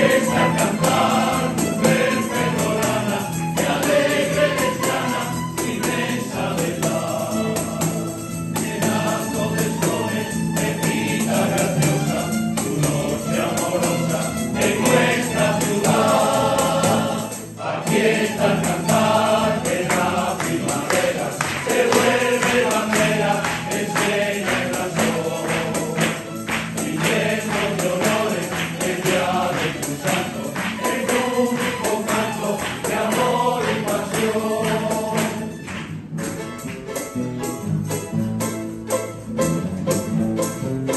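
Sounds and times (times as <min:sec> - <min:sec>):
choir singing: 0:00.0 - 0:35.9
steady percussion: 0:00.0 - 0:40.9.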